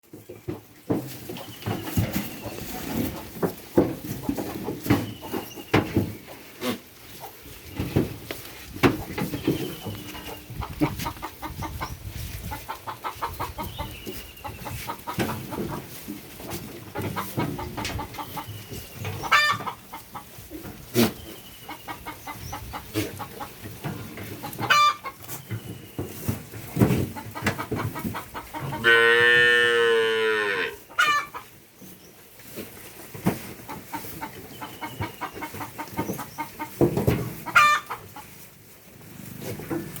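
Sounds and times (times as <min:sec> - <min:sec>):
hen clucking and squawking: 0:01.4 - 0:25.6, 0:26.4 - 0:31.6, 0:33.5 - 0:38.6.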